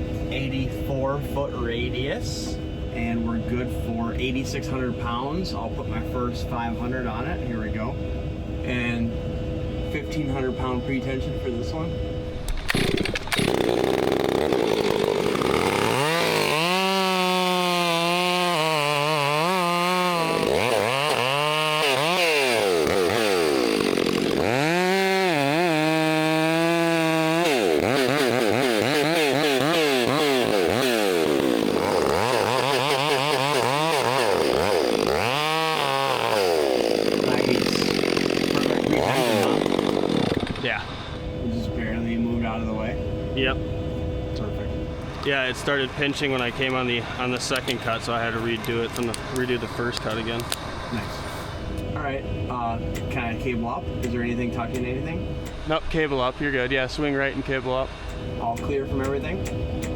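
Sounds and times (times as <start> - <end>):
chainsaw cutting wood: 12.4 - 41.2, 46.2 - 51.8.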